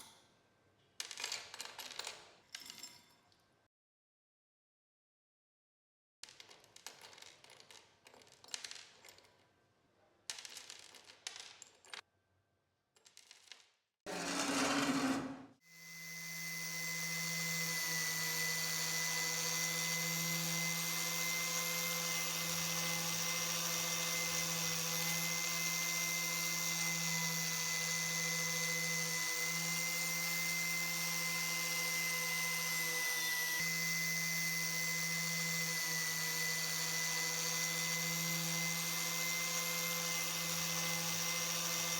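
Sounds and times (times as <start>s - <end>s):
electric power tool whining: 14.1s - 41.9s.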